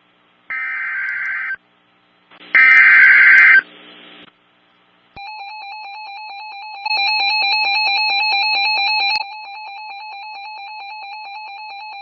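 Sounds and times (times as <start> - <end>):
buzzing digital data bursts: 2.5 - 3.7.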